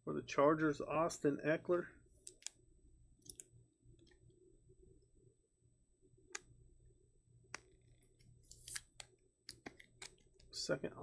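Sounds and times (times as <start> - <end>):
low steady hum: 0.0 - 11.0
trading cards clicking: 8.5 - 10.5.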